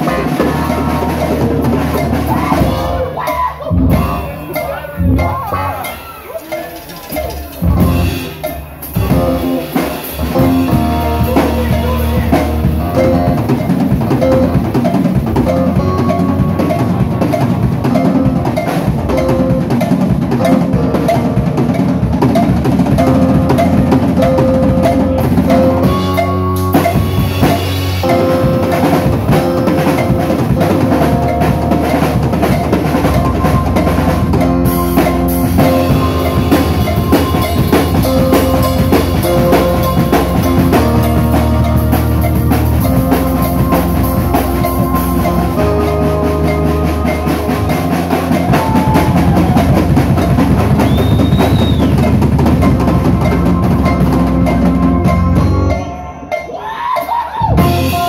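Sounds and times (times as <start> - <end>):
bass drum: 0.0 - 4.4, 7.6 - 8.4, 9.0 - 55.8, 57.6 - 58.0
live rock band playing: 0.0 - 58.0
snare drum: 47.1 - 53.4.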